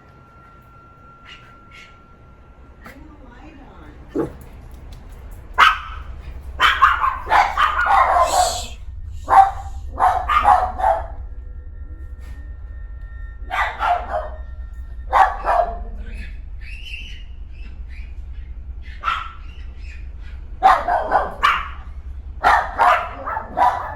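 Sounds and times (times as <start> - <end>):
animals barking: 1.2 - 2.2, 4.0 - 4.5, 5.6 - 11.2, 13.5 - 14.4, 15.1 - 23.9.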